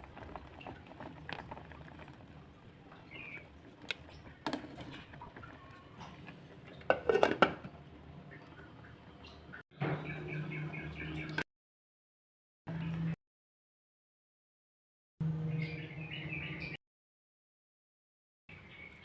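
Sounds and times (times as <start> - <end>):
kitchen utensils and dishes clinking: 4.5 - 7.7.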